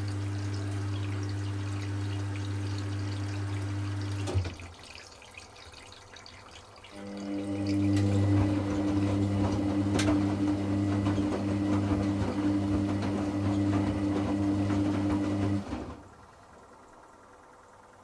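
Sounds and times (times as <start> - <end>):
drain pump humming: 0.0 - 18.0
water noise: 0.0 - 18.0.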